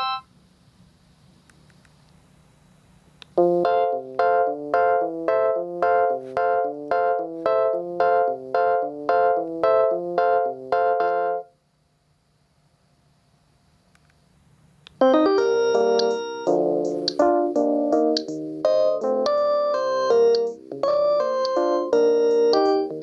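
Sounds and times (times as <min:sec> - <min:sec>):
electronic ringtone melody: 0:00.0 - 0:00.2, 0:15.0 - 0:23.0.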